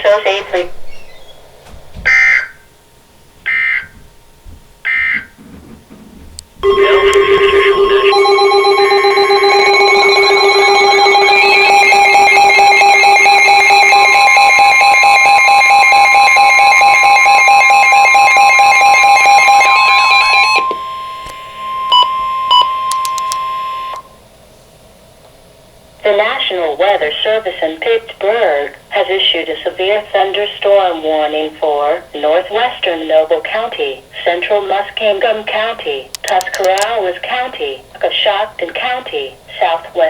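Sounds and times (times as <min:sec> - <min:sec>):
short beeps: 0:06.6 - 0:15.2
digital data bursts: 0:06.6 - 0:20.6
electronic alert tone: 0:06.6 - 0:20.8.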